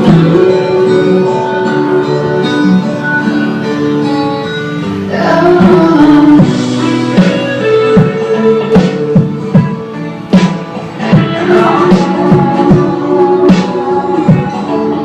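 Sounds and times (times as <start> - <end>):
person singing: 0.0 - 4.0, 5.0 - 15.0
guitar accompaniment: 0.0 - 15.0
drum-like hits: 6.4 - 14.6.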